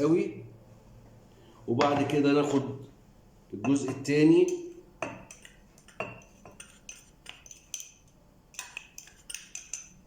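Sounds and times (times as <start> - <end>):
metal spoon clinking against glass: 3.7 - 10.0.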